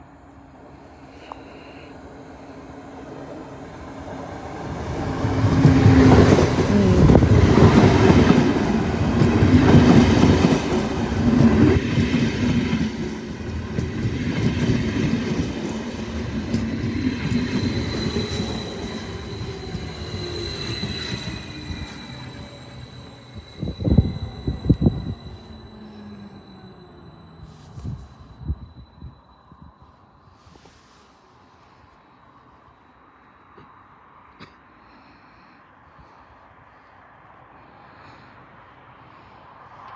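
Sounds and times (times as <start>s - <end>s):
train wheels rumbling on rails: 1.0s - 29.2s
high-pitched squealing: 15.9s - 29.5s.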